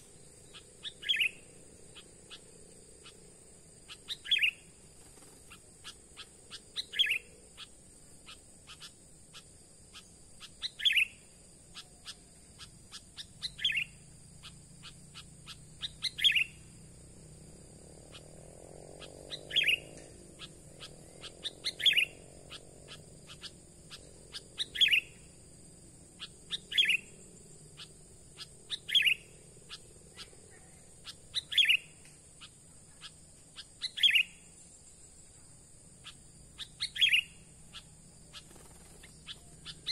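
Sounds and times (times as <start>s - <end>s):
bird calling sharp notes: 19.0s - 25.2s
faint ticks: 19.8s - 21.4s, 31.9s - 33.8s.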